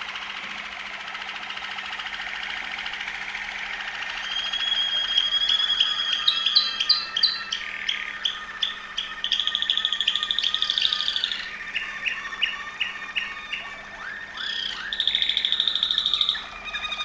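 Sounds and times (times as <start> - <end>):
canary singing trills and whistles: 3.9 - 17.0.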